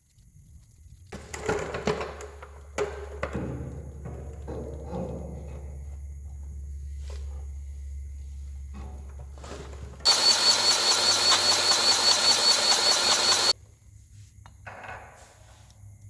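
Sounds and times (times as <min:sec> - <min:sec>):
motor machine whining and pulsing: 0:10.1 - 0:13.6.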